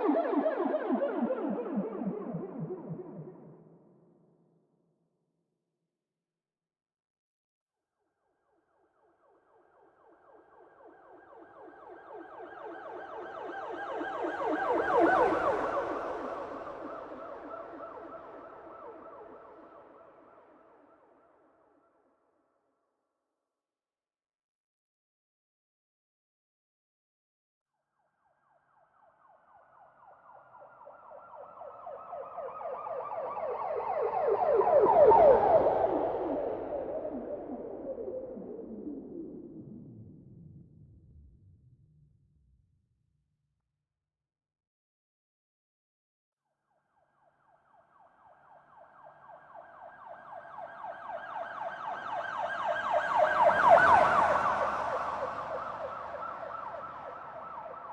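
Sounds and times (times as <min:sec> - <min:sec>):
police siren yelping: 0:00.0 - 0:03.5, 0:30.5 - 0:38.4, 0:48.6 - 0:57.9.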